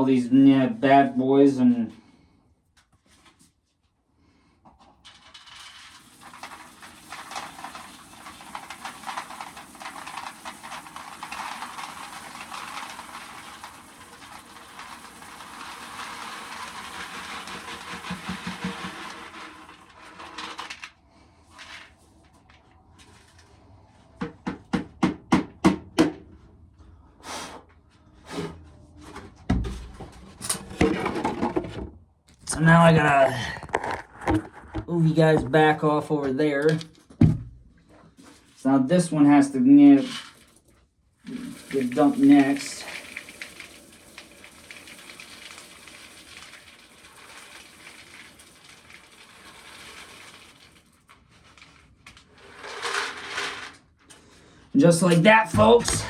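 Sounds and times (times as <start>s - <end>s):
pail knocking and clattering: 4.7s - 20.9s, 24.2s - 26.3s, 29.1s - 35.8s, 36.6s - 37.6s, 41.3s - 53.8s, 54.8s - 56.0s
corn kernels pouring: 5.1s - 22.0s, 38.9s - 56.0s.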